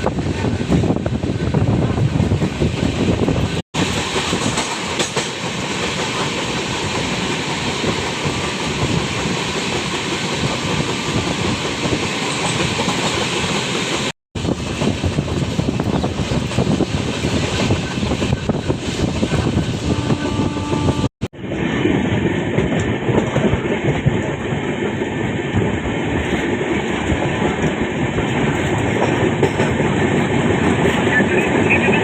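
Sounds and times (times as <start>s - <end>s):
train rumbling on track: 0.0s - 32.0s.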